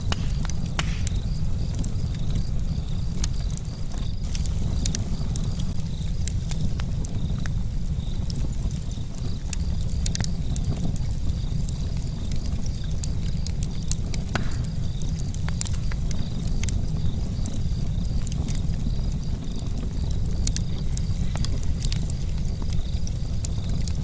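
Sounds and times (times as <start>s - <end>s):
campfire crackling: 0.0s - 24.0s.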